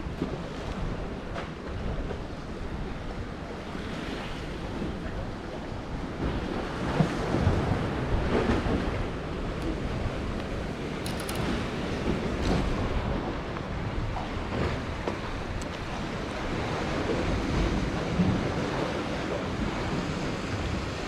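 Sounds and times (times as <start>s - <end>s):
sea waves washing: 6.1s - 21.0s.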